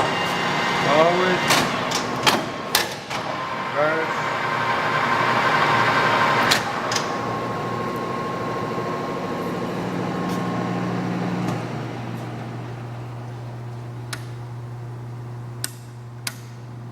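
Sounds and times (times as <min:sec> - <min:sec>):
metal lathe running: 0:00.0 - 0:13.2
steady low hum: 0:00.0 - 0:16.9.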